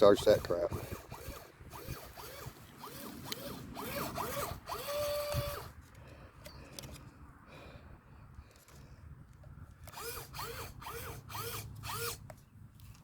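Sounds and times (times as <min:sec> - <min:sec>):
electric winch motor whirring: 0:00.0 - 0:05.8, 0:09.8 - 0:12.2.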